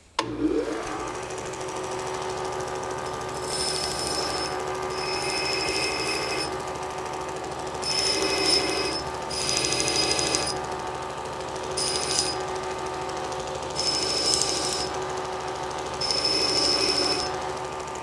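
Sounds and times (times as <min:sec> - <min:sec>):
power tool motor running: 0:00.2 - 0:18.0
high-pitched rhythmic whirring: 0:11.7 - 0:12.4.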